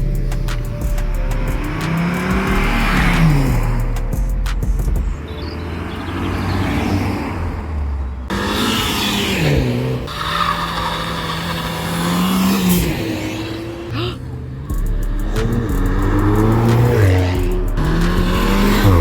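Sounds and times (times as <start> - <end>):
car engines revving: 0.0 - 19.0.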